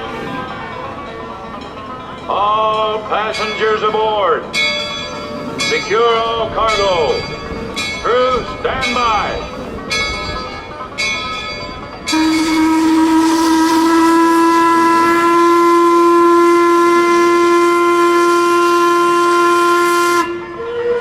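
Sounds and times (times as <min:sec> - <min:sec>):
bell tone: 0:00.0 - 0:12.8
steam whistle blast: 0:12.1 - 0:21.0.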